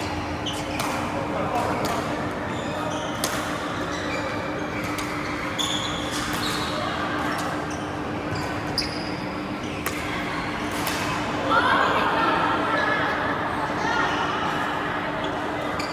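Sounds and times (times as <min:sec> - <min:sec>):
shoe squeaks on court floor: 0:02.5 - 0:09.8
racket hitting shuttlecock: 0:03.2 - 0:03.5, 0:09.8 - 0:10.1.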